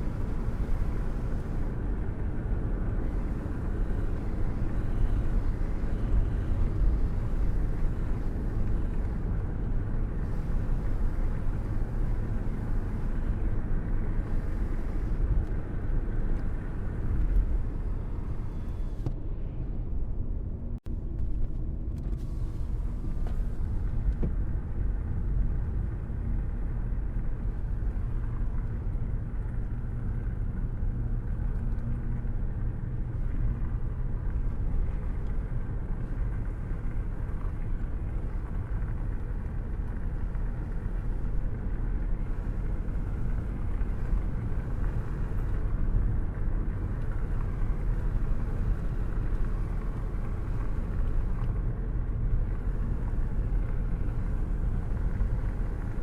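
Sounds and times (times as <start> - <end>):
rain rumble: 20.9 - 56.0.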